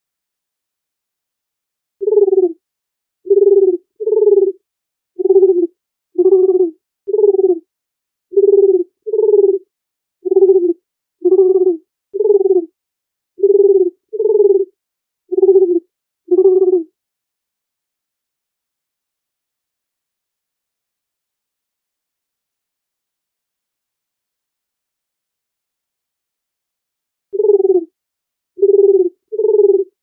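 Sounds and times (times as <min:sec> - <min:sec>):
dove cooing: 0:02.0 - 0:02.6, 0:03.3 - 0:04.6, 0:05.2 - 0:07.6, 0:08.4 - 0:12.7, 0:13.4 - 0:14.7, 0:15.3 - 0:16.9, 0:27.4 - 0:27.9, 0:28.6 - 0:30.0.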